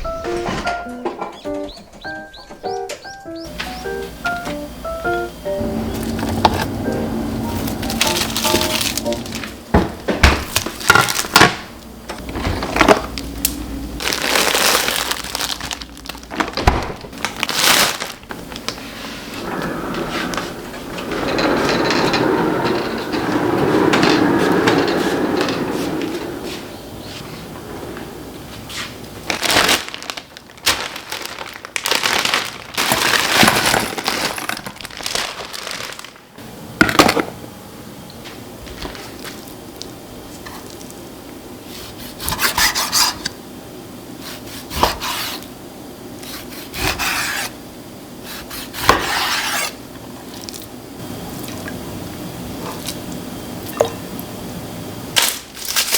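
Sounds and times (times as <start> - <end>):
plastic bags rustling: 5.7 - 19.4, 25.4 - 36.4, 55.2 - 55.9
plastic packaging crinkling: 7.6 - 9.5, 10.5 - 11.6, 13.9 - 18.9, 28.8 - 36.4, 55.2 - 55.9.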